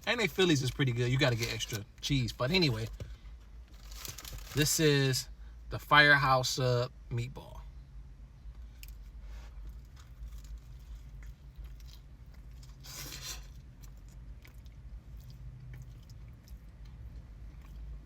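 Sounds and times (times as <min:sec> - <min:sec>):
steady low hum: 0:00.0 - 0:18.0
person chewing food: 0:09.6 - 0:18.0.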